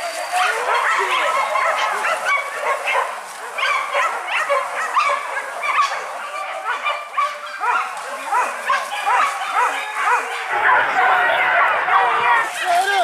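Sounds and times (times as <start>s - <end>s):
dogs barking and yelping: 0.0s - 13.0s.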